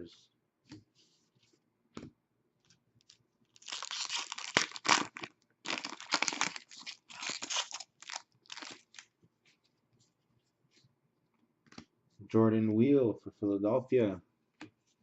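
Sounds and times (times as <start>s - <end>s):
wrapper tearing and crinkling: 3.6s - 9.1s.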